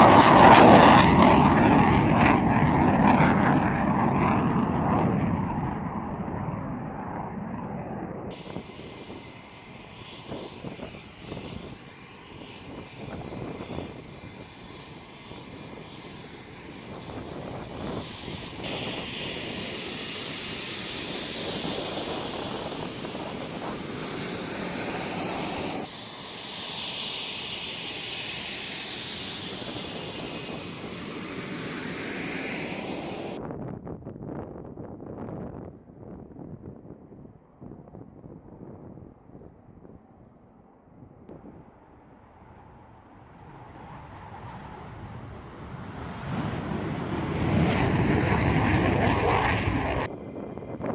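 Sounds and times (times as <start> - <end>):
jet engines whining and roaring: 0.0 - 50.9.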